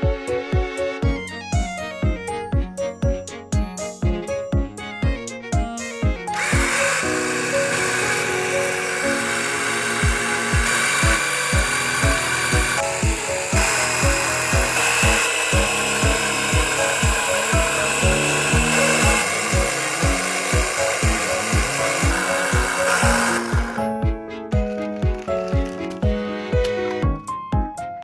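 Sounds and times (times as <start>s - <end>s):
music with kick-drum beat: 0.0s - 7.2s, 10.0s - 28.0s
mechanical whirring: 6.2s - 23.9s.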